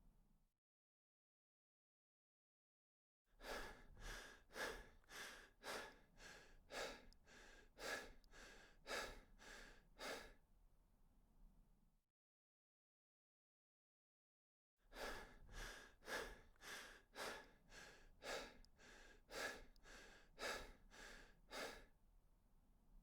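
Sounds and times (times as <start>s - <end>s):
rapid panting breaths: 3.4s - 10.4s, 15.0s - 21.9s.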